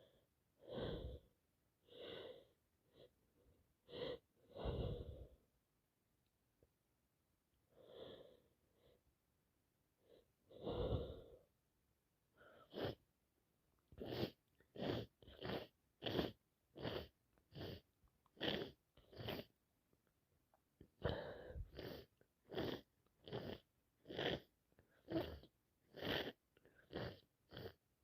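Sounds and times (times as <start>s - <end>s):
catching breaths: 3.9s - 5.4s, 21.0s - 23.5s.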